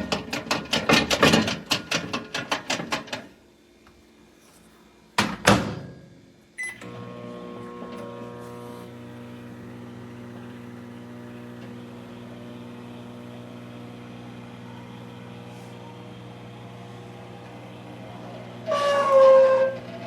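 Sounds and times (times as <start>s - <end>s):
microwave oven humming: 5.1s - 20.0s.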